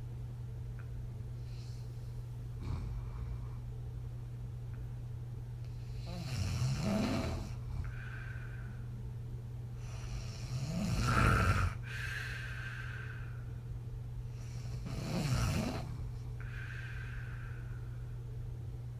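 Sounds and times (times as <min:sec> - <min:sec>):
woman snoring: 0:05.8 - 0:08.1, 0:09.8 - 0:12.4, 0:14.4 - 0:16.0.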